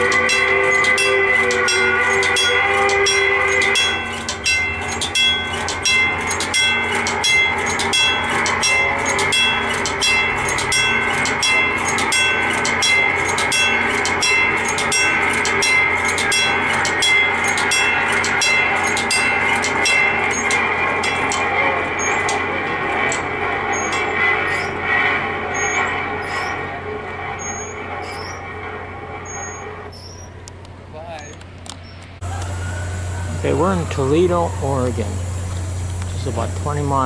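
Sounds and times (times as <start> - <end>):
locomotive horn chord: 0.0 - 5.6
crossing bell ringing: 0.0 - 30.5, 32.2 - 37.0
freight train rumble: 0.0 - 37.0.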